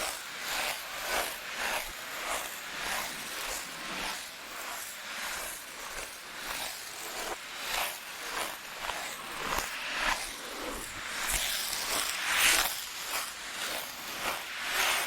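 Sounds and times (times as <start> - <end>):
ice skate blades scraping: 6.6 - 15.0.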